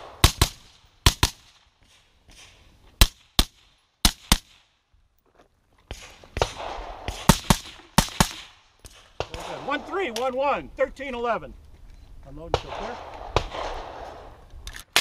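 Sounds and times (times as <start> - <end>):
gunshots in quick pairs: 0.0 - 4.7, 5.9 - 10.2, 12.5 - 14.3.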